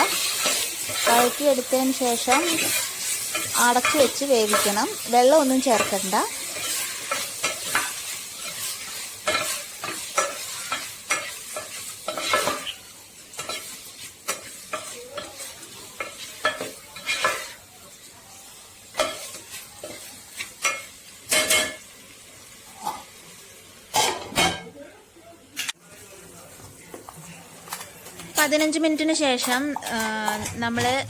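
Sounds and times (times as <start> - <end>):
spatula scraping a pan: 0.0 - 17.6, 18.9 - 21.8
chicken sizzling in a pan: 0.0 - 30.5.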